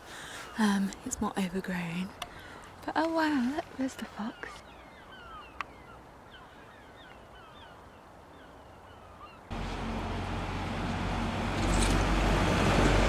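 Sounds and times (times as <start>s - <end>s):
birds chirping: 0.0s - 13.0s
low hum: 9.5s - 13.0s.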